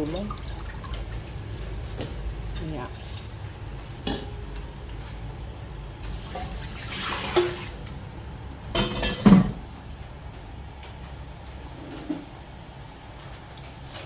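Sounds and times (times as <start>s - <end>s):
pot of water boiling: 0.0s - 14.0s
metal cookware clattering: 4.0s - 4.4s, 6.2s - 7.7s, 8.7s - 9.6s
water rushing: 6.2s - 7.8s.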